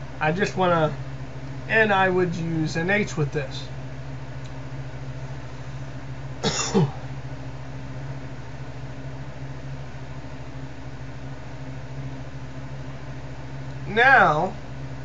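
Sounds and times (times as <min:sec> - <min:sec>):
low room hum: 0:00.0 - 0:15.0
person clearing throat: 0:06.4 - 0:07.1.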